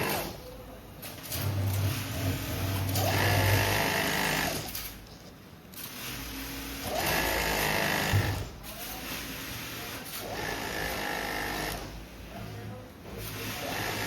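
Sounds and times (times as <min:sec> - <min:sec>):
sewing machine stitching: 0:01.0 - 0:05.0, 0:05.8 - 0:09.2, 0:10.0 - 0:11.9, 0:13.2 - 0:14.0.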